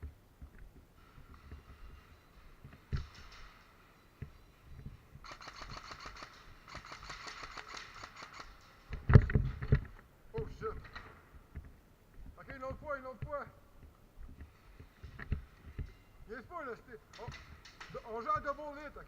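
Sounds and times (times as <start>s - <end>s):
airsoft gun firing full auto: 5.2s - 8.6s.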